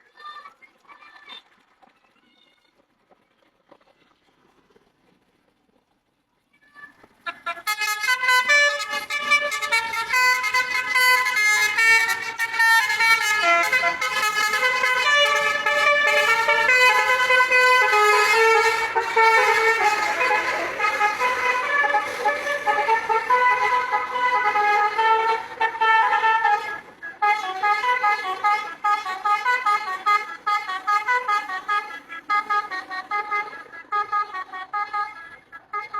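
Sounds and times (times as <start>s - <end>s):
musical air horn tune: 7.3s - 35.9s.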